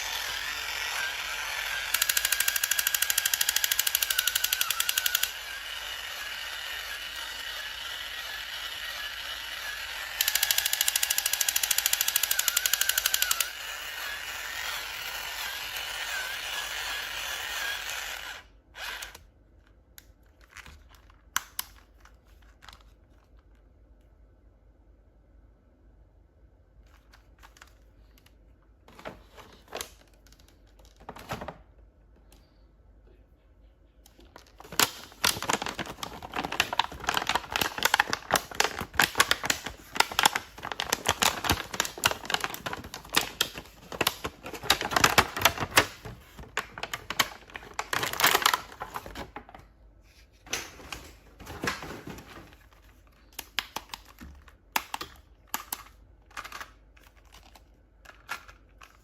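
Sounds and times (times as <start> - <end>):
plastic and cardboard crackling: 34.1 - 59.0.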